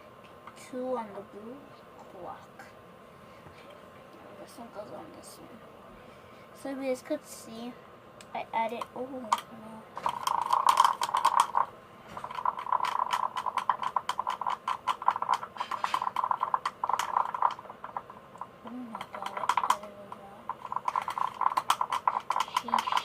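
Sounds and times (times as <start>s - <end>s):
pencil stirring slime in bowl: 10.0s - 23.0s.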